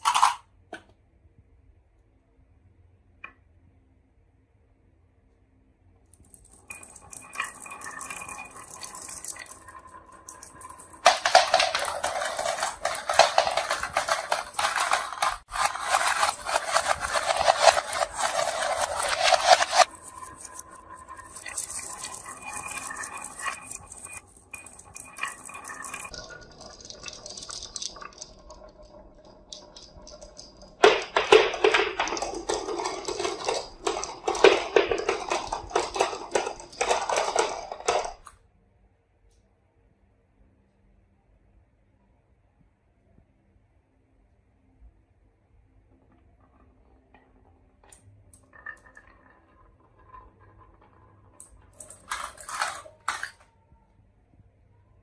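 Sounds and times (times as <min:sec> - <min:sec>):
marbles rattling down a track: 0:06.2 - 0:38.3, 0:46.4 - 0:53.5.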